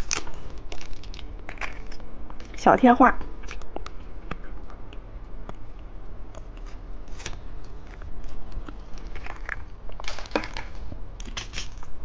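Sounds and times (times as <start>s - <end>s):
plastic packaging crinkling: 0.0s - 2.6s, 7.1s - 11.9s.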